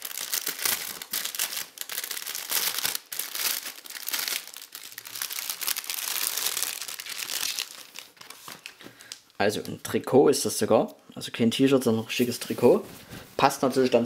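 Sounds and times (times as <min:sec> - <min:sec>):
packaging crinkling and rustling: 0:00.0 - 0:09.8.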